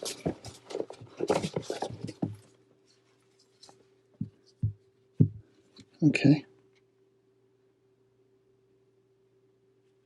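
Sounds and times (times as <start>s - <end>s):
paper rustling and crinkling: 0.0s - 3.8s.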